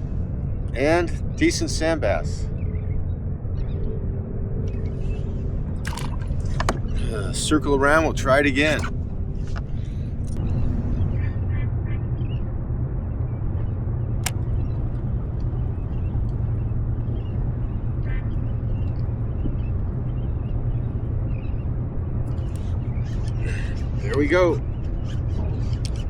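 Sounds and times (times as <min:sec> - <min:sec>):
boat engine humming: 0:00.0 - 0:26.0
faint bird calls: 0:22.3 - 0:26.0.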